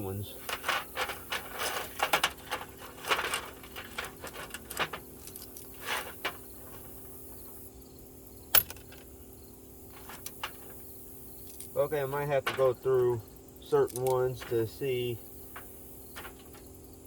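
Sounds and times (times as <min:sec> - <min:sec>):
metal sockets clinking and rattling: 0:00.4 - 0:06.8, 0:08.5 - 0:09.1, 0:13.8 - 0:14.7.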